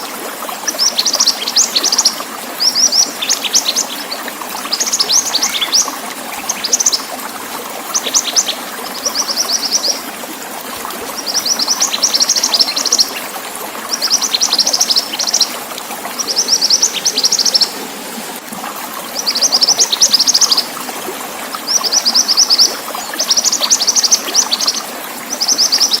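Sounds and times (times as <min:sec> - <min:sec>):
running water: 0:00.0 - 0:26.0
songbird chirping rapidly: 0:01.0 - 0:07.1.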